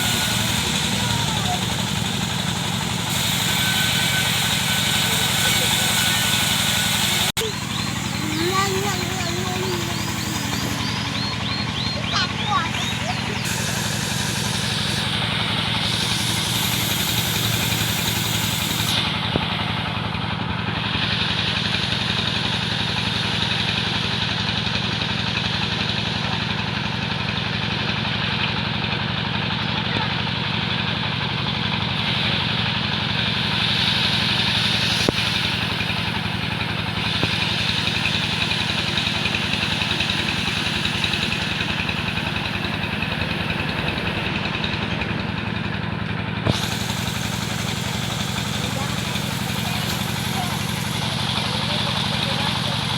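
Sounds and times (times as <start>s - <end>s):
saw engine running: 0.0s - 52.9s.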